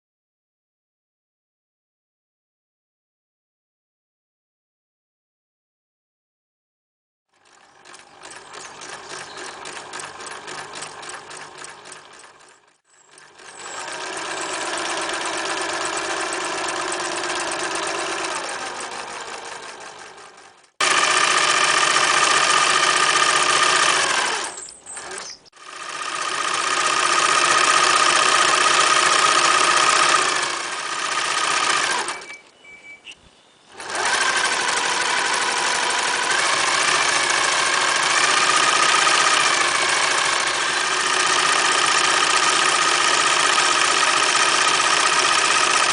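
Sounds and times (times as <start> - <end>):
electric sewing machine stitching: 7.3 - 32.4, 33.7 - 45.9.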